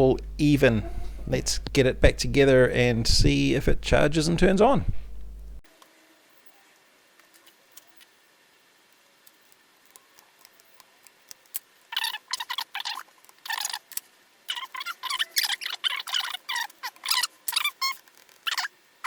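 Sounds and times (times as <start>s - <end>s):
plastic squeaks and scrapes: 0.8s - 1.5s, 11.9s - 18.8s.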